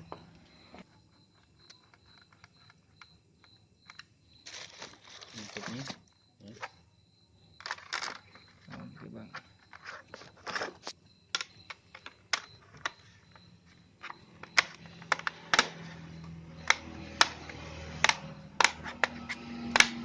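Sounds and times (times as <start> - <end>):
laptop key presses: 14.4 - 15.8.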